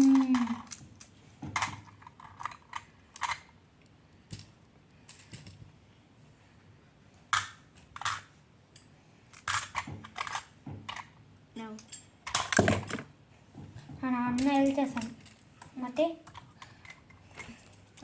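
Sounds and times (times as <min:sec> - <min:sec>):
magnetic blocks clacking together: 0:00.0 - 0:03.5.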